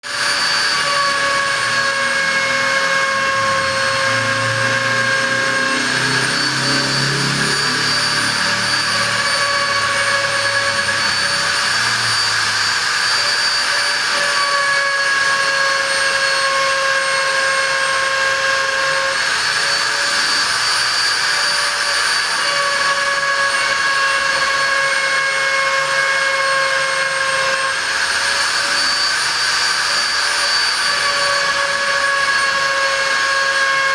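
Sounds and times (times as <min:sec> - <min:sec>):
router spindle whining: 0:00.0 - 0:33.9.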